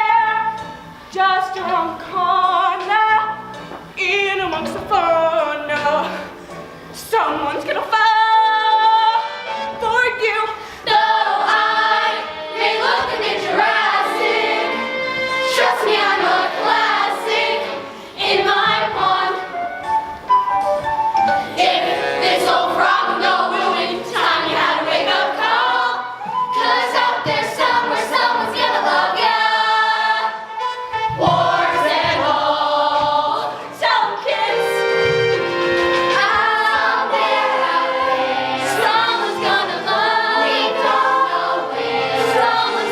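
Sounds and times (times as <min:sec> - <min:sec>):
music: 0:00.0 - 0:42.9
children singing in chorus: 0:10.9 - 0:19.6, 0:21.5 - 0:30.5, 0:31.1 - 0:34.8, 0:36.1 - 0:42.9.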